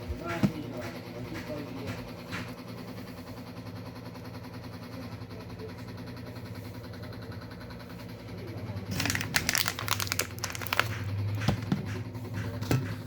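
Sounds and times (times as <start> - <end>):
plastic packaging crinkling: 8.9 - 11.2.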